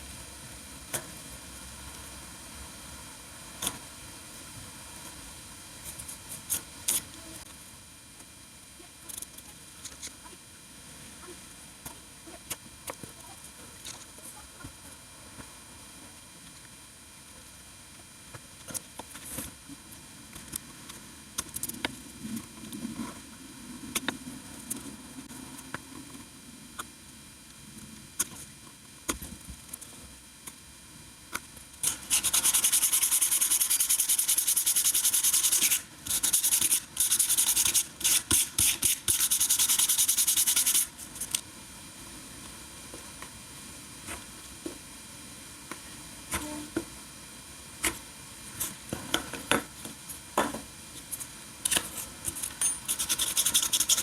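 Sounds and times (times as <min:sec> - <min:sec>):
sandpaper rasping on rubber: 0:31.8 - 0:40.9, 0:52.9 - 0:54.0.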